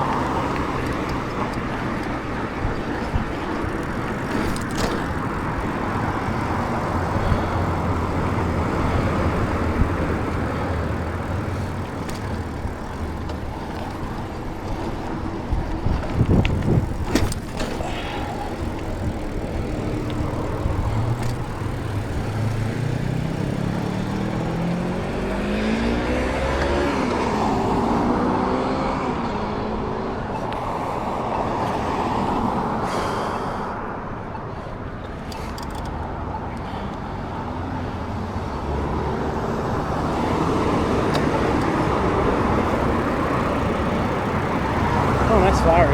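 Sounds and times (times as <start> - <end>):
vehicle engine accelerating: 5.2 - 30.6, 36.7 - 45.9
wind noise: 14.0 - 21.6.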